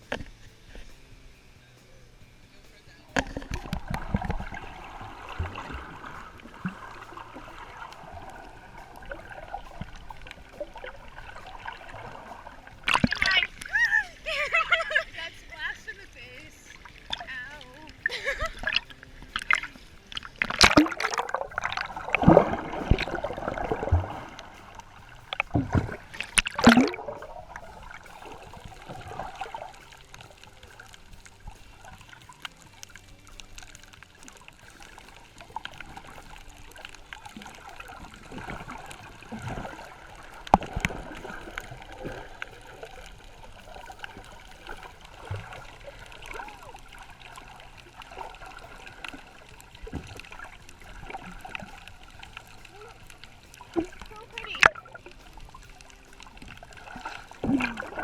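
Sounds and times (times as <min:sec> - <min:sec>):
water bubbling: 0:00.0 - 0:58.0
water splashing: 0:00.0 - 0:58.0.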